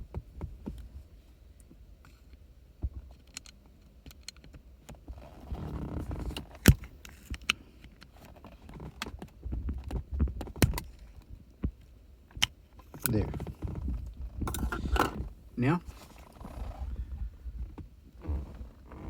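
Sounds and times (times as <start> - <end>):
small clicks of hard parts: 3.1 - 4.6
handling noise: 12.8 - 19.0.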